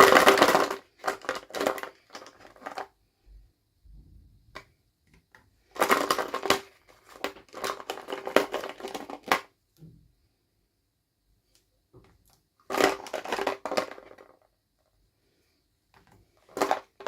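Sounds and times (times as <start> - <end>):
packaging crinkling and crushed: 0.0 - 2.9, 5.7 - 9.5, 12.6 - 14.4, 16.4 - 17.0.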